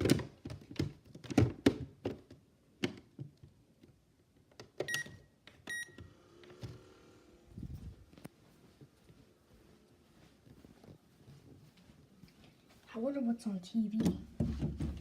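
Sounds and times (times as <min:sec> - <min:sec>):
plastic clicks and knocks: 0:00.0 - 0:04.9.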